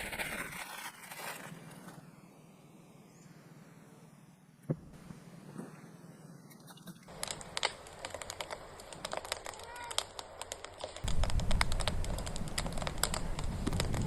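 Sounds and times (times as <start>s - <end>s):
wood fire crackling: 7.0s - 14.0s.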